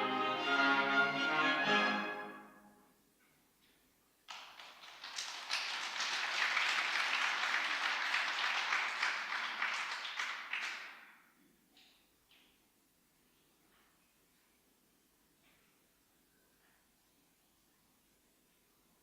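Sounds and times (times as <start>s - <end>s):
audience applauding: 4.3s - 11.0s.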